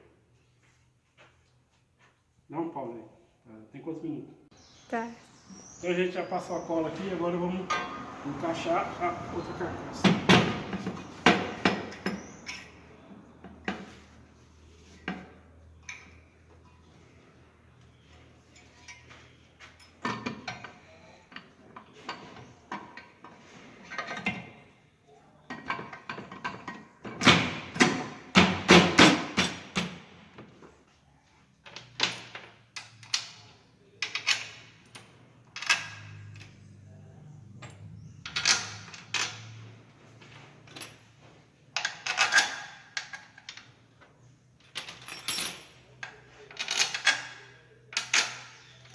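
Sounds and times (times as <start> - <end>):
metal clunks and knocks: 9.9 - 12.7.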